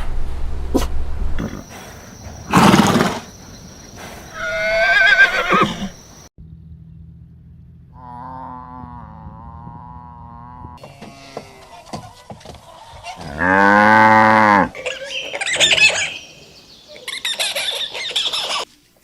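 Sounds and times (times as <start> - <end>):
wavering whinny-like call: 4.4 - 5.9.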